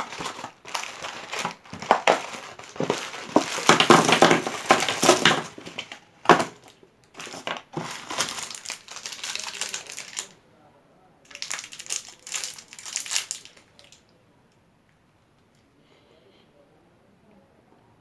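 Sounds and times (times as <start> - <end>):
chocolates crunching: 0.0 - 10.4, 11.3 - 14.0
wrappers crinkling: 0.0 - 10.4, 11.3 - 14.0.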